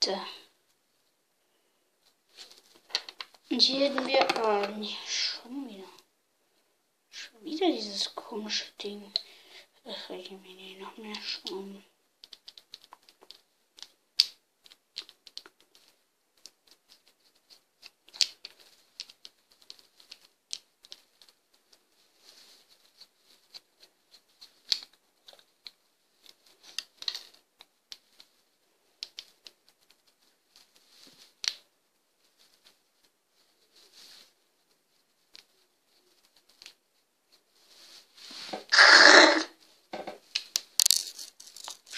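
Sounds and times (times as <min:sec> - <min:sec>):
plastic parts clicking: 0:40.3 - 0:41.9.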